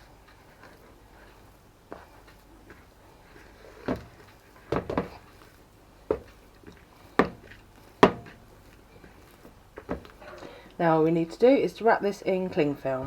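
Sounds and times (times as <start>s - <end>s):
kitchen knocks and clunks: 4.7s - 5.2s.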